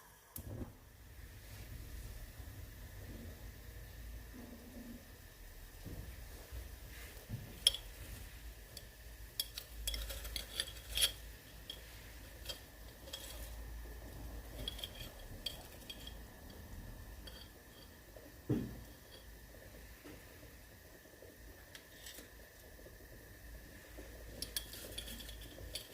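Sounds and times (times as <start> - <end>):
kitchenware clinking: 7.4 - 19.3, 24.2 - 25.9
soft thump: 18.5 - 18.8.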